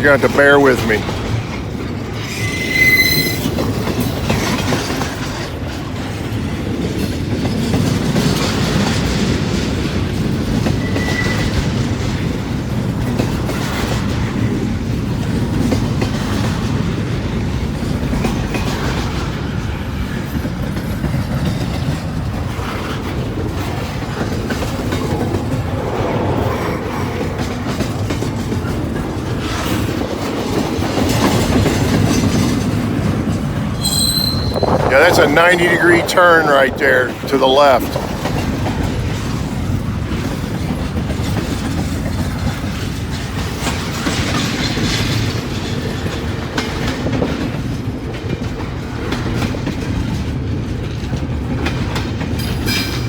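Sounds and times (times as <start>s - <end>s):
freight train cars rolling: 0.0s - 53.0s
wheels clacking over rail joints: 0.2s - 25.9s, 27.2s - 35.2s, 37.9s - 53.0s
train wheel squeal: 1.9s - 5.5s, 10.3s - 12.3s, 33.8s - 35.0s, 52.4s - 53.0s.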